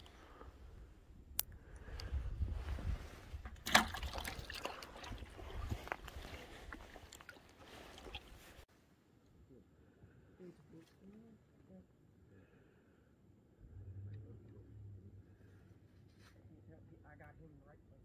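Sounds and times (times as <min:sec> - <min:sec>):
water sloshing: 0:03.3 - 0:08.7
crackling rustle: 0:04.8 - 0:08.7.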